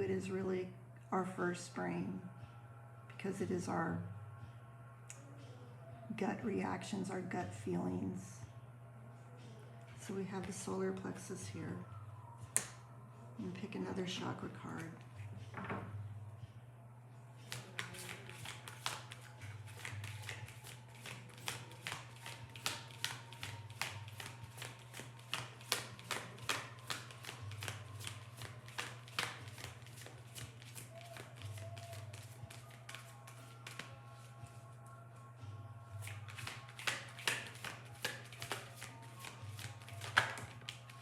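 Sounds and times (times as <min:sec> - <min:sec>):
cards being shuffled: 0:17.4 - 0:34.6, 0:36.0 - 0:41.0.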